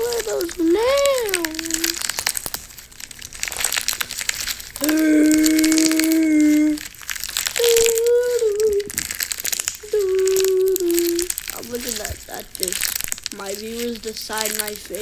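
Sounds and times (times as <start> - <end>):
voice holding long notes: 0.0 - 2.1, 4.8 - 6.9, 7.6 - 9.1, 9.8 - 12.8
hardened wax crackling and crunching: 0.0 - 15.0.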